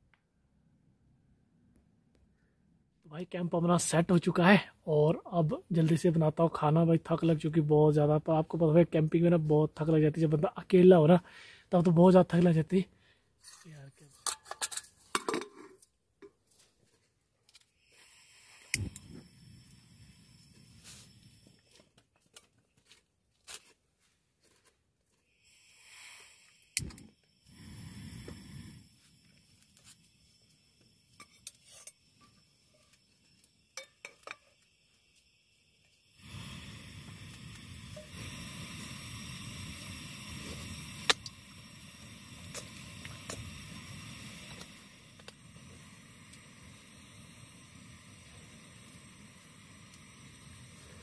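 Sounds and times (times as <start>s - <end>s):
short hiss: 17.5s - 22.0s, 25.2s - 51.0s.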